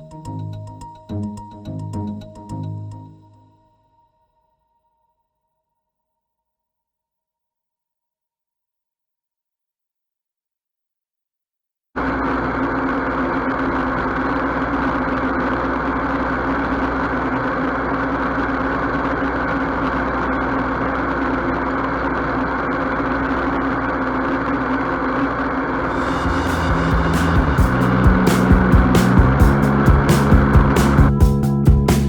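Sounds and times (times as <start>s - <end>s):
combine harvester running: 12.0s - 31.1s.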